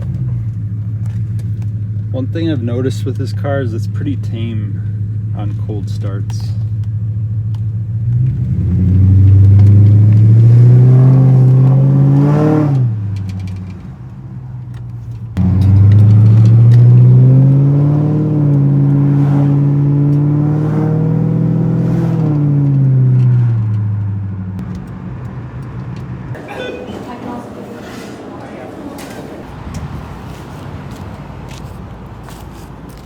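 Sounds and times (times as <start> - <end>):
car exhaust accelerating: 0.0 - 26.4.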